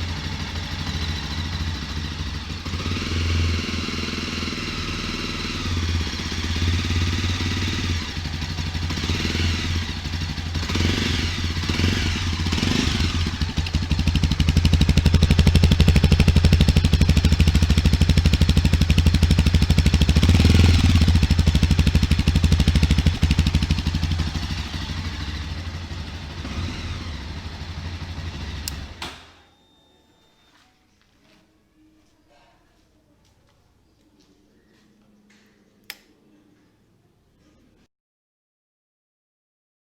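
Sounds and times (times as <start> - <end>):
motorcycle engine revving: 0.0 - 29.2.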